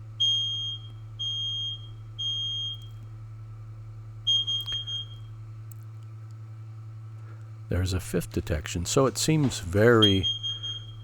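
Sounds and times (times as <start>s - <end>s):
steady low hum: 0.0s - 11.0s
smoke alarm beeping: 0.2s - 3.0s, 4.2s - 5.3s, 10.0s - 11.0s.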